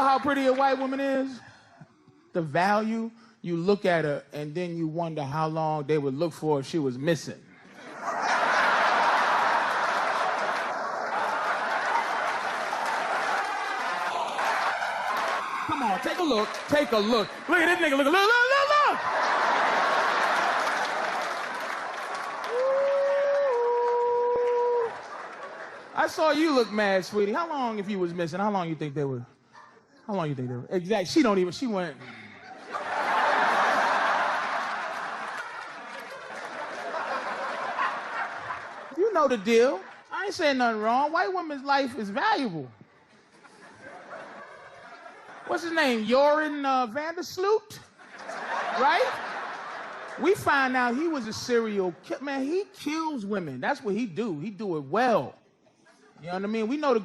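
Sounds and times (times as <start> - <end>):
audience laughing: 7.6 - 22.4, 24.7 - 27.1, 32.0 - 40.3, 43.1 - 46.0, 48.0 - 50.7
audience applauding: 8.7 - 26.7, 32.8 - 39.0.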